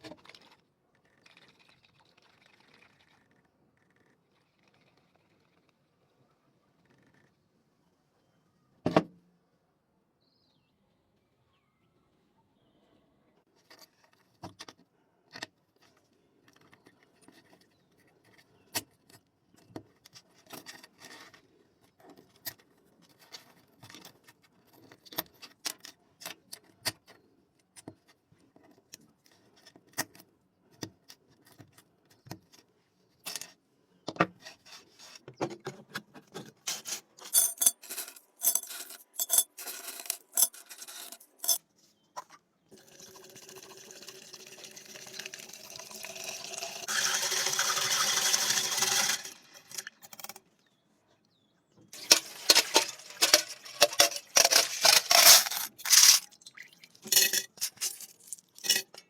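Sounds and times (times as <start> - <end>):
plastic keyboard parts clattering: 52.0 - 56.3.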